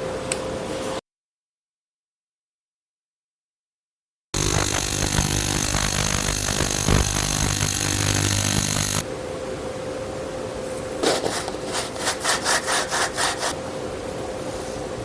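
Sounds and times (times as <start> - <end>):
machine hum: 4.4 - 9.0.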